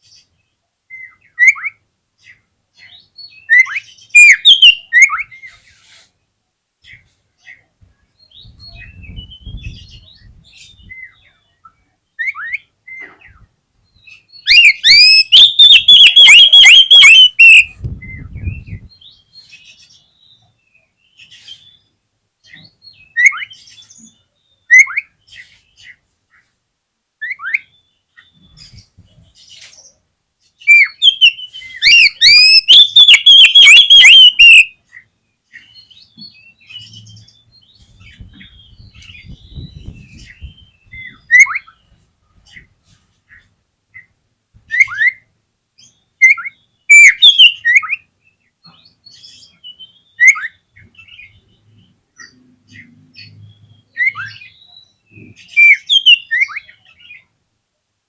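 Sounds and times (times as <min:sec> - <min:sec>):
bird singing rapid whistles: 0:03.3 - 0:05.4, 0:14.3 - 0:18.8, 0:30.6 - 0:34.8, 0:46.2 - 0:48.1, 0:55.4 - 0:56.8
single whistles and chirps: 0:03.5 - 0:05.4, 0:14.4 - 0:18.8, 0:30.7 - 0:34.7, 0:46.3 - 0:47.9, 0:55.6 - 0:56.7.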